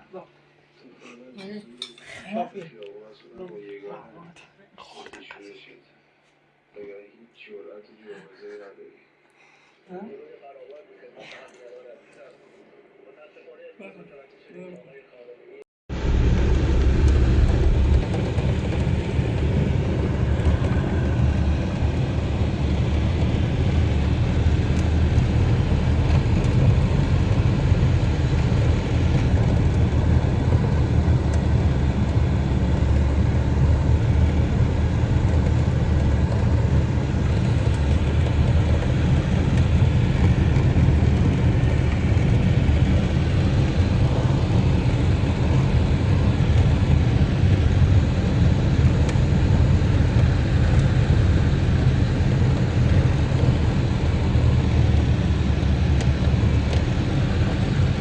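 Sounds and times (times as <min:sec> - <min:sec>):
vehicle driving rumble: 0:15.9 - 0:58.0.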